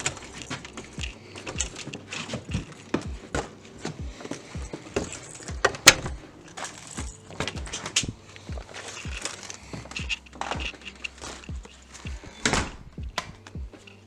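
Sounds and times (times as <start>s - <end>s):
electronic music: 0.0s - 14.0s
deep bass hits dropping in pitch: 11.5s - 13.8s.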